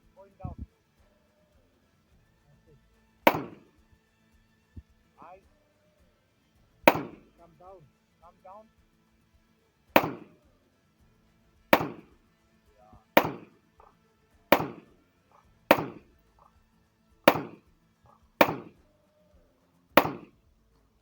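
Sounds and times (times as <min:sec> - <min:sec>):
rifle shots with echo: 0:03.2 - 0:03.8, 0:06.8 - 0:07.6, 0:10.0 - 0:10.5, 0:11.7 - 0:12.2, 0:12.9 - 0:16.6, 0:17.3 - 0:19.1, 0:20.0 - 0:20.4.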